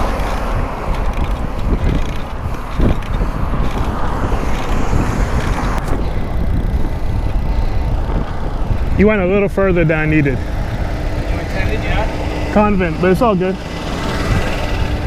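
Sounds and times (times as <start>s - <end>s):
road noise: 0.0s - 15.0s
wind rushing over microphone: 0.0s - 15.0s.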